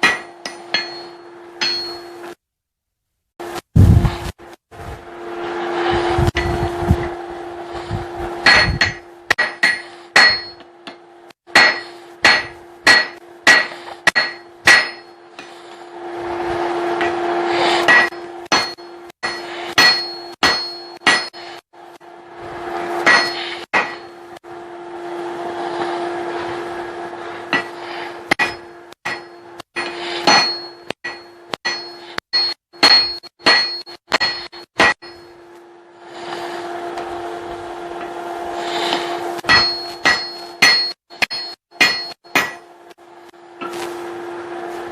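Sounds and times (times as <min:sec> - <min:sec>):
hammer striking steel on anvil: 0:00.0 - 0:02.4, 0:08.3 - 0:16.2, 0:16.8 - 0:24.5, 0:27.5 - 0:35.6, 0:38.8 - 0:43.9
steady hum: 0:00.0 - 0:02.4, 0:03.4 - 0:44.9
rushing noise: 0:03.4 - 0:08.4.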